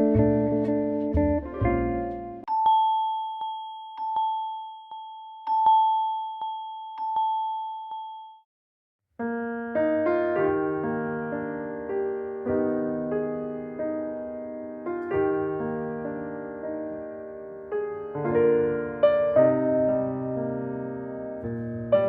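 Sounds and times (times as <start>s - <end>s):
soft piano chords: 0.0s - 2.5s, 9.3s - 22.0s
high chime ringtone: 2.5s - 8.5s.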